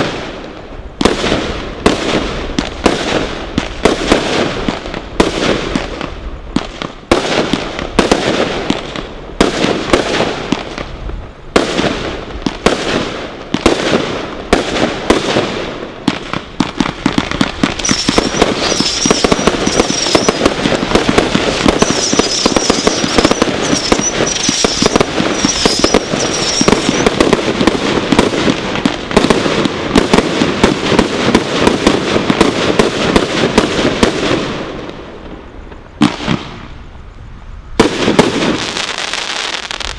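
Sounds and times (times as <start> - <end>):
firework barrage shots and crackling: 0.0 - 36.9, 37.7 - 39.9
high wavering firework tones: 17.7 - 27.4.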